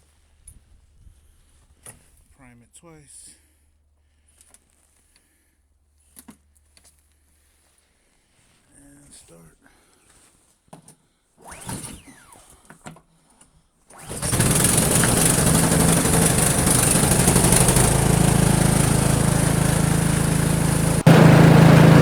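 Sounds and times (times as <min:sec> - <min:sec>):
snowblower engine running: 0:14.1 - 0:22.0.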